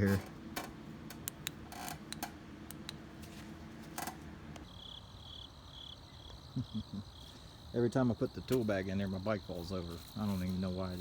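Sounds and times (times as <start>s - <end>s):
low steady hum: 0.0s - 7.7s
crickets chirping: 4.6s - 11.0s.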